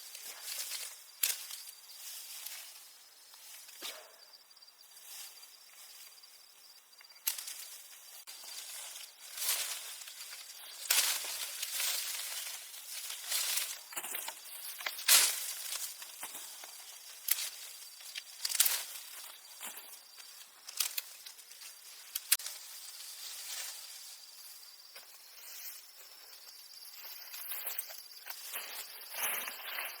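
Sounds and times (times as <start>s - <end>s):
leaves rustling and crackling: 0.0s - 3.8s, 4.8s - 6.5s, 7.1s - 24.9s.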